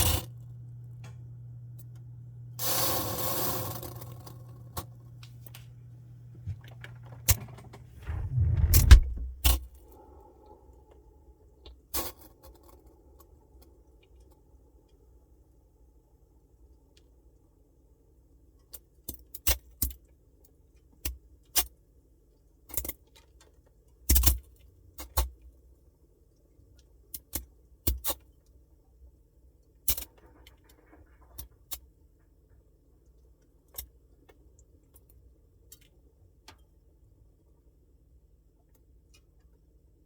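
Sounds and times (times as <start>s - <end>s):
faint low hum: 0.0s - 11.6s.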